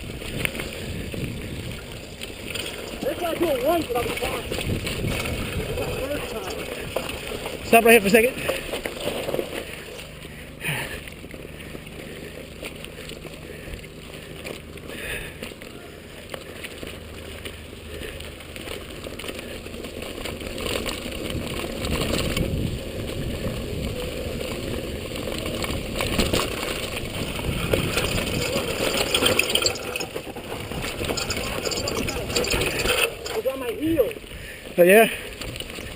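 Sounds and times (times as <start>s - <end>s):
wind on microphone: 0.0s - 2.0s, 3.9s - 7.0s, 21.4s - 25.1s, 25.7s - 33.4s
bike rattling: 0.0s - 35.9s
tyres rumbling on dirt: 0.0s - 35.9s.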